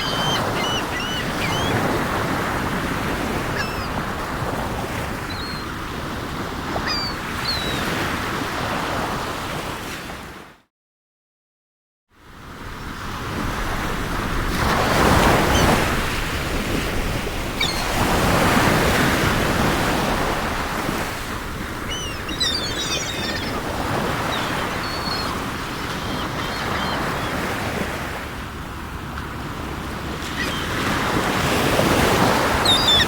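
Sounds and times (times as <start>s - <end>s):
seagulls calling: 0.0s - 8.1s, 15.1s - 16.0s, 17.4s - 28.3s, 29.1s - 33.0s
sea waves breaking: 0.0s - 9.3s, 13.4s - 33.0s.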